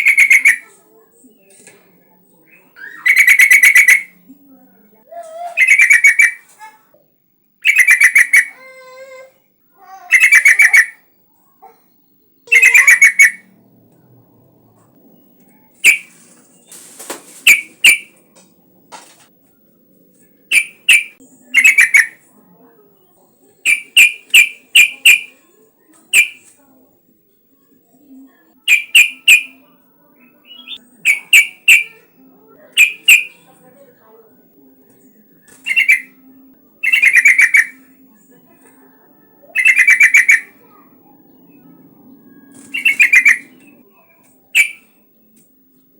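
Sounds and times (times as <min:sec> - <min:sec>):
bird singing chattering phrases: 0:00.0 - 0:00.8, 0:02.5 - 0:04.3, 0:05.1 - 0:06.8, 0:07.6 - 0:09.2, 0:09.8 - 0:13.5, 0:15.8 - 0:16.4, 0:17.4 - 0:18.2, 0:20.5 - 0:22.3, 0:23.6 - 0:25.4, 0:26.0 - 0:26.6, 0:28.6 - 0:29.6, 0:30.2 - 0:33.6, 0:35.4 - 0:36.2, 0:36.8 - 0:38.0, 0:39.4 - 0:41.6, 0:42.6 - 0:45.2.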